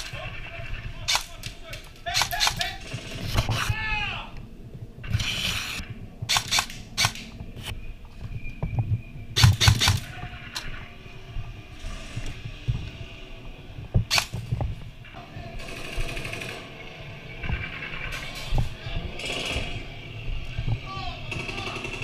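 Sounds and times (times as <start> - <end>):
airsoft guns firing: 1.0 - 3.7, 6.3 - 7.4, 9.4 - 10.6, 21.3 - 22.0.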